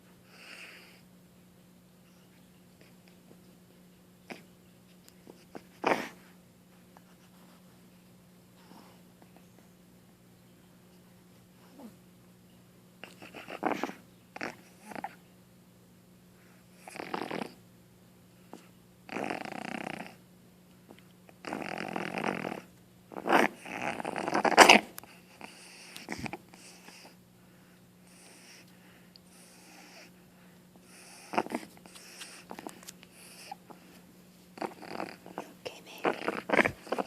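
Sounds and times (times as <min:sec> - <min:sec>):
puppy coughing and hacking: 0:05.7 - 0:06.2, 0:23.2 - 0:25.0, 0:34.6 - 0:37.0
puppy breathing: 0:23.5 - 0:37.0.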